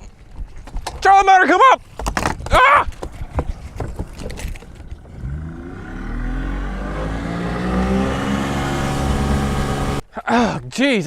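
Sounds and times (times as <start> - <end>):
outboard motor accelerating: 4.8 - 10.0.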